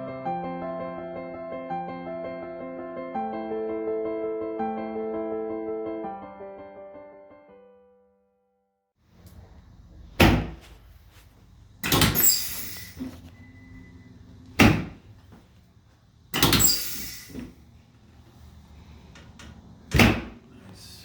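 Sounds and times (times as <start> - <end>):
sharp knocks: 10.2 - 10.7
rustling and scraping: 10.5 - 11.6, 12.5 - 13.4.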